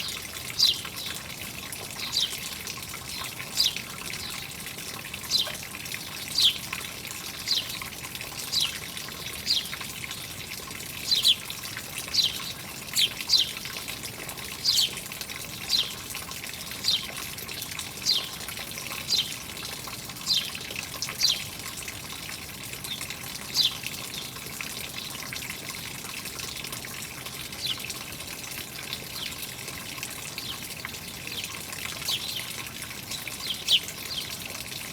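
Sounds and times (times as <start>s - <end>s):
bird chirping: 0.0s - 1.2s, 2.0s - 2.4s, 3.2s - 3.8s, 6.4s - 6.6s, 7.5s - 7.8s, 8.5s - 8.8s, 9.4s - 9.8s, 11.0s - 13.6s, 14.6s - 15.0s, 15.7s - 16.0s, 16.8s - 17.1s, 18.0s - 18.3s, 19.0s - 19.4s, 20.3s - 20.6s, 21.2s - 21.4s, 23.6s - 23.8s, 33.3s - 34.3s
running water: 0.0s - 34.9s.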